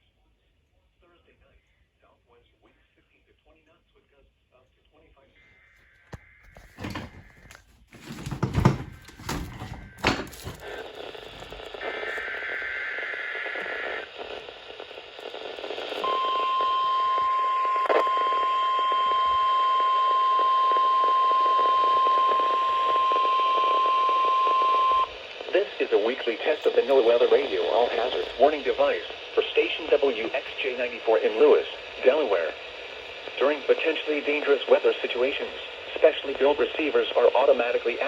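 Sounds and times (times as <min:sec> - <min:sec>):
loud radio static crackling: 0:05.1 - 0:38.0
radio hiss: 0:09.1 - 0:38.0.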